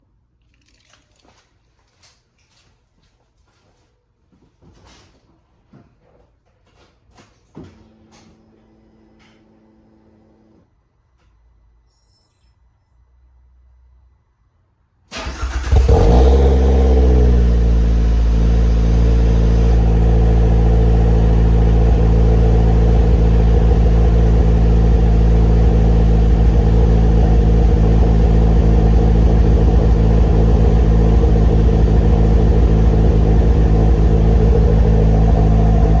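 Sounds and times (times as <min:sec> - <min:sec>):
car engine cranking and idling: 0:15.1 - 0:36.0.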